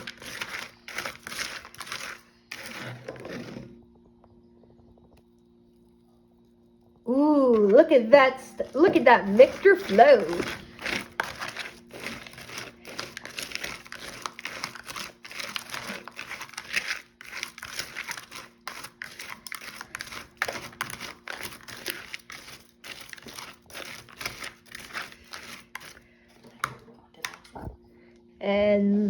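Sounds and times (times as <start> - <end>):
cereal crackling in sticky mixture: 0.0 - 3.6, 7.1 - 26.1.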